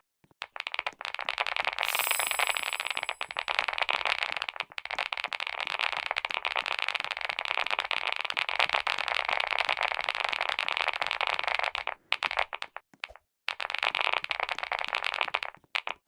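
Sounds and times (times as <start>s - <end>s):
small hard objects clicking and rattling: 1.8s - 3.5s.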